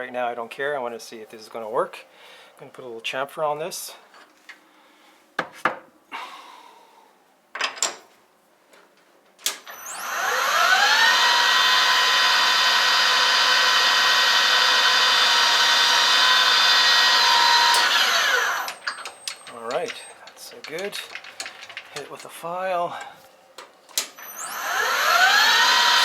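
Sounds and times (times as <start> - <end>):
metal lathe whining: 9.8 - 22.0, 24.2 - 26.0
handling clicks and knocks: 18.7 - 22.4.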